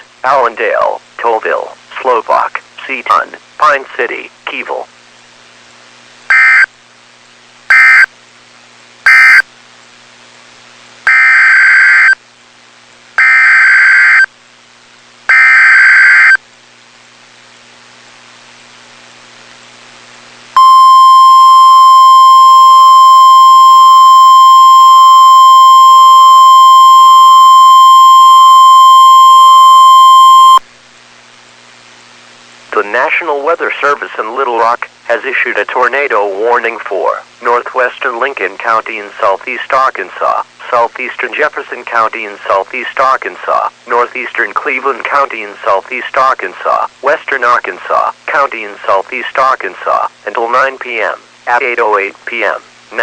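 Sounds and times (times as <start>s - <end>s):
buzzing data bursts: 6.3s - 6.7s, 7.7s - 8.1s, 9.1s - 9.4s, 11.1s - 12.2s, 13.2s - 14.3s, 15.3s - 16.4s, 20.6s - 30.6s
steady warning alarm tone: 7.7s - 8.1s, 9.1s - 9.4s, 11.1s - 12.2s, 13.2s - 14.3s, 15.3s - 16.4s, 20.6s - 30.6s.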